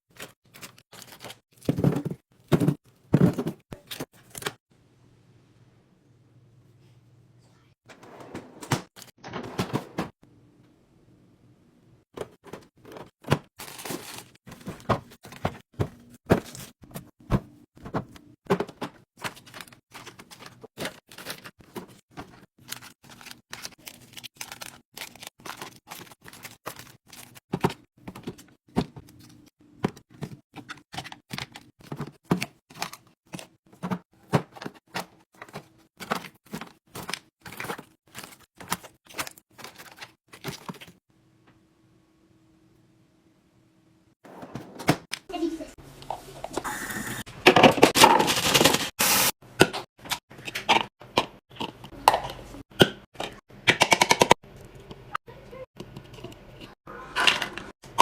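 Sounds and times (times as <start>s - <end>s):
packaged snacks being handled: 0.1s - 2.2s, 13.6s - 15.4s, 19.2s - 28.4s, 34.9s - 41.0s.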